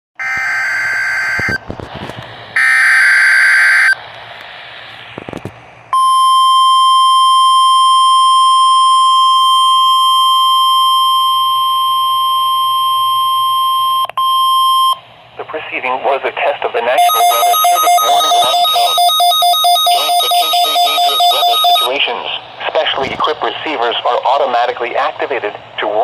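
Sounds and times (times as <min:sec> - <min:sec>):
steady warning alarm tone: 0:00.2 - 0:01.6, 0:02.6 - 0:04.0, 0:06.0 - 0:15.0, 0:17.0 - 0:22.0
harsh digital bursts: 0:17.0 - 0:22.0.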